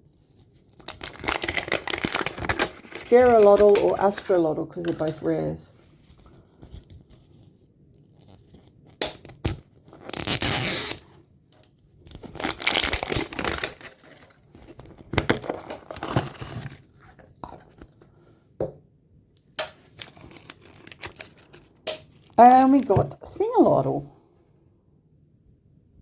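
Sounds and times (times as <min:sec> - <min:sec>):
wrapping torn and crinkled: 0:00.4 - 0:05.3, 0:08.1 - 0:11.2, 0:12.1 - 0:17.3, 0:19.9 - 0:22.9.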